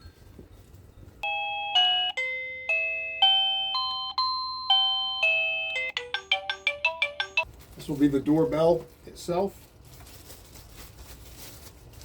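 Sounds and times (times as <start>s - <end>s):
electronic doorbell chime melody: 1.2s - 7.5s.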